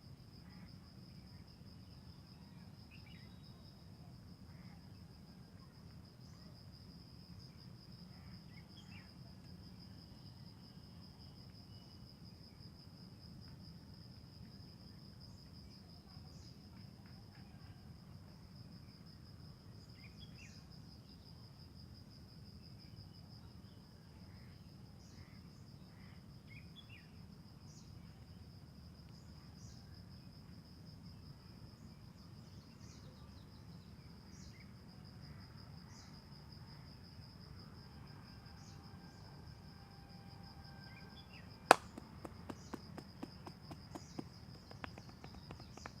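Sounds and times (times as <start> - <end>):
insects trilling: 31.8 - 46.0.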